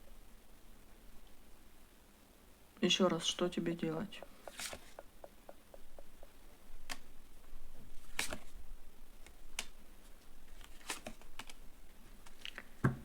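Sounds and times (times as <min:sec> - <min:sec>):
cards clicking and snapping: 0:04.2 - 0:05.0, 0:08.0 - 0:08.6, 0:09.2 - 0:09.8, 0:10.5 - 0:11.6.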